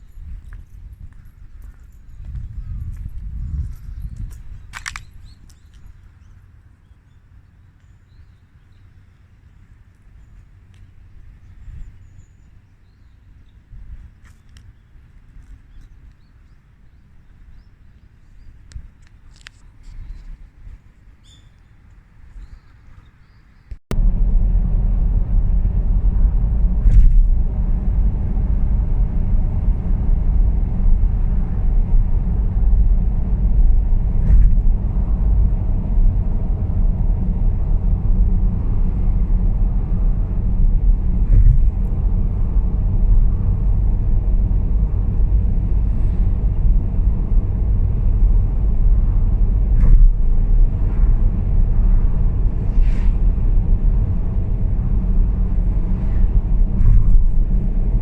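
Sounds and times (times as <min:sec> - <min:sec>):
loud low rumble: 0:00.0 - 0:05.4, 0:23.9 - 0:58.0.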